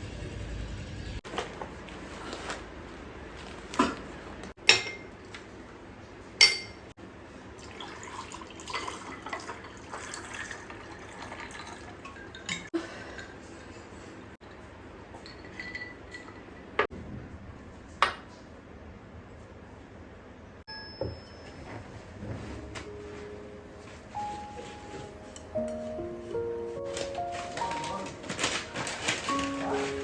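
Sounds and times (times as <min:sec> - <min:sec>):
glass jars clinking: 0:06.4 - 0:06.8, 0:11.1 - 0:13.8, 0:15.2 - 0:16.5.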